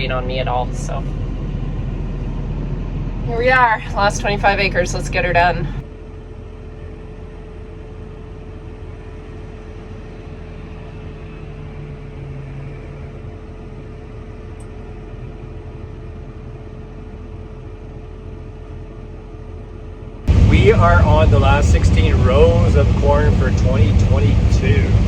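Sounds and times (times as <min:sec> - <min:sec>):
constant whine: 0:00.0 - 0:25.0
farm machine engine rumble: 0:20.3 - 0:25.0.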